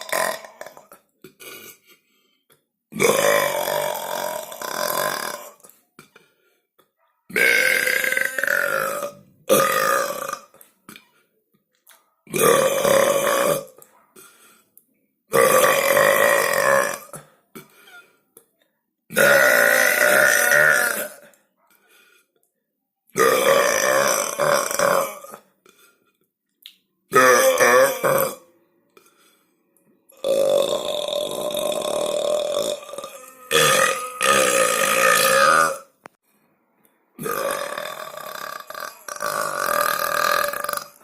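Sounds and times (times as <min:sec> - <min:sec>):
person burping loudly: 0:00.0 - 0:02.2, 0:02.9 - 0:06.4, 0:07.3 - 0:11.1, 0:12.2 - 0:13.9, 0:15.3 - 0:18.2, 0:19.1 - 0:21.4, 0:23.2 - 0:26.1, 0:27.1 - 0:29.4, 0:30.1 - 0:36.1, 0:37.2 - 0:41.0.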